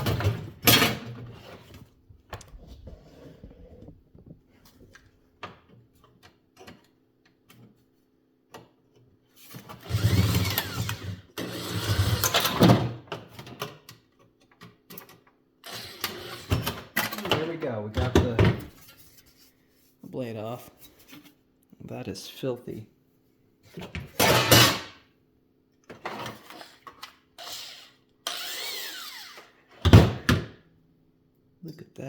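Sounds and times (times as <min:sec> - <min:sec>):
power drill drilling metal: 0:09.8 - 0:12.5, 0:27.4 - 0:29.6.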